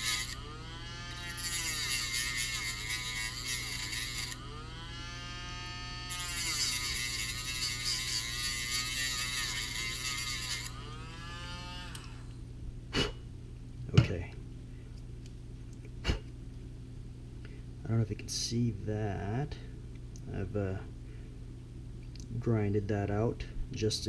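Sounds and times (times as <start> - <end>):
rotary tool grinding plastic: 0.0 - 12.2.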